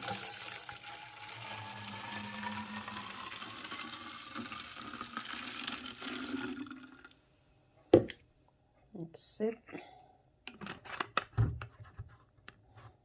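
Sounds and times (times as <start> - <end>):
water pouring into bottle: 0.0 - 7.2.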